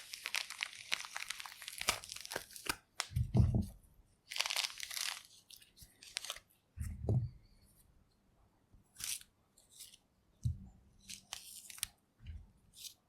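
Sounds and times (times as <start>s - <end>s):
soft thumps of fruit handled: 3.2s - 3.8s, 6.8s - 7.4s.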